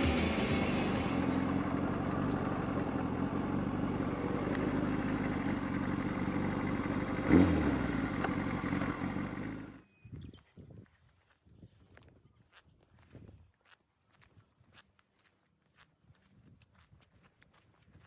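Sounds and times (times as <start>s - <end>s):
motorcycle engine running: 0.0s - 9.8s.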